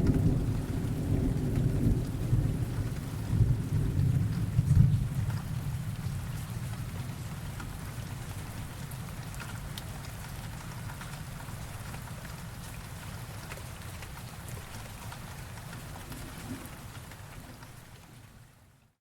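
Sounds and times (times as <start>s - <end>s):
low thunder rumble: 0.0s - 6.3s
rain falling: 0.0s - 19.0s.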